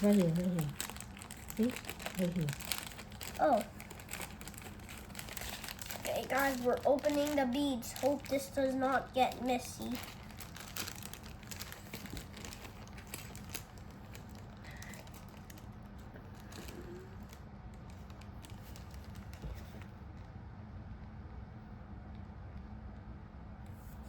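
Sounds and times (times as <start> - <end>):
plastic beads clicking and rattling: 0.0 - 8.5, 9.3 - 15.6.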